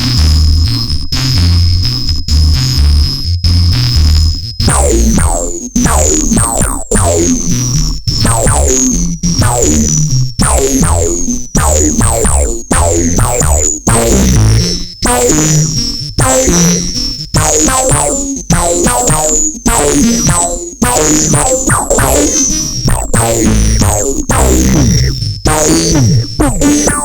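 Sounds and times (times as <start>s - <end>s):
synth bass line: 4.6s - 27.0s
synth notes with pitch sweeps: 4.7s - 27.0s
steady high tone: 20.3s - 27.0s.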